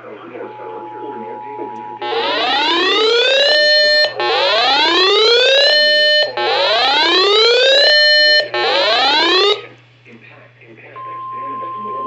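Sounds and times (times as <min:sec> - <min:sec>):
rising electronic siren alarm: 0:02.0 - 0:09.7.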